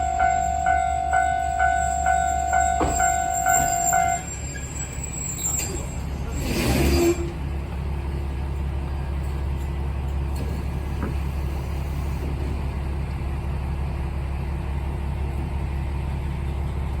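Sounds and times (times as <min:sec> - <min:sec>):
diesel engine idling: 0:07.2 - 0:17.0.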